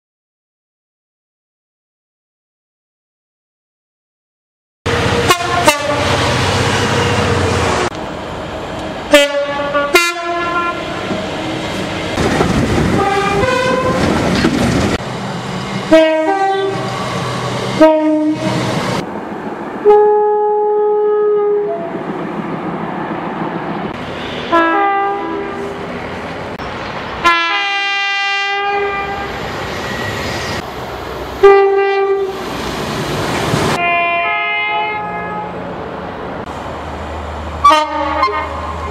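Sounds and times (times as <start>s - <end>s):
train horn blasts: 4.9s - 7.4s, 9.1s - 11.0s, 13.0s - 14.1s, 15.9s - 17.0s, 17.8s - 18.6s, 19.8s - 22.0s, 24.5s - 25.8s, 27.2s - 29.4s, 31.4s - 32.3s, 33.8s - 35.6s, 37.6s - 38.9s
trains running on track: 4.9s - 38.9s.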